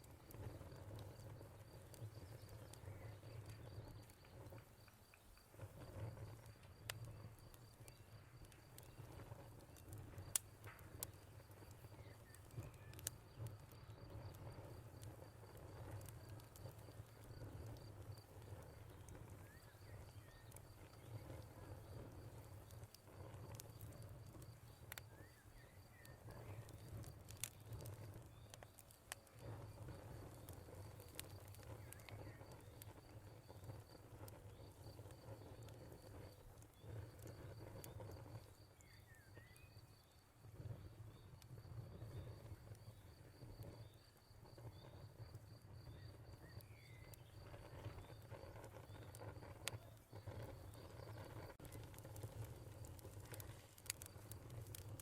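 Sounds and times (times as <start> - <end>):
fire crackling and popping: 0.0 - 55.0
cricket chirping trill: 0.1 - 55.0.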